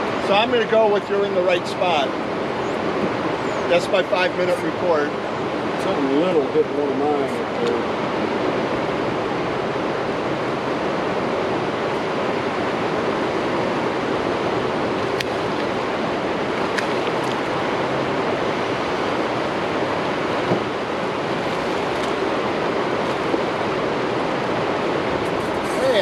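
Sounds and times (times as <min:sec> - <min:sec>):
water roaring through dam gates: 0:00.0 - 0:26.0.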